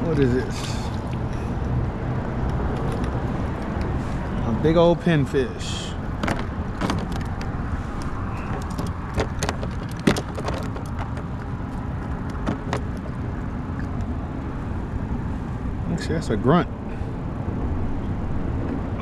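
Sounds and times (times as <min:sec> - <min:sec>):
road traffic rumble: 0:00.0 - 0:19.0
sharp clicks and knocks: 0:06.2 - 0:13.2.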